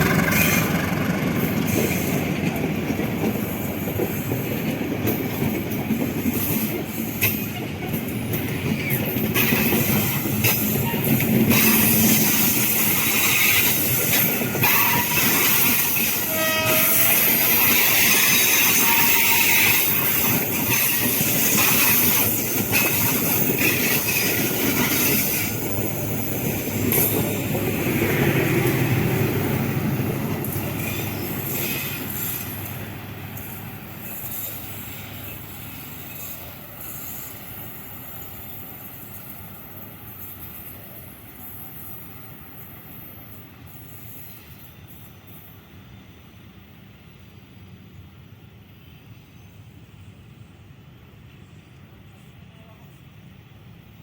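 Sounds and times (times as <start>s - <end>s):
train wheels clattering: 0.0s - 39.5s.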